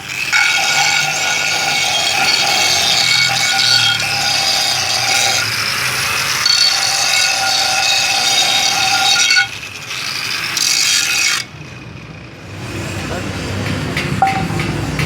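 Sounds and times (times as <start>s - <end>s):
electric grinder whining: 0.0s - 12.3s.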